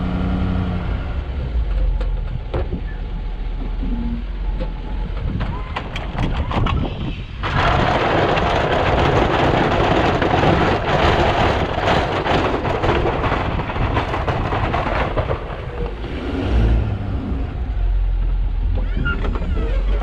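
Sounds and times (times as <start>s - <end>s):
snowplow scraping snow: 7.4s - 20.0s.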